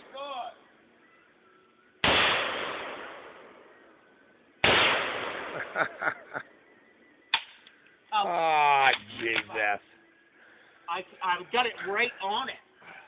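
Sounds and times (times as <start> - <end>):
rifle shots with echo: 2.0 - 3.9, 4.6 - 6.1.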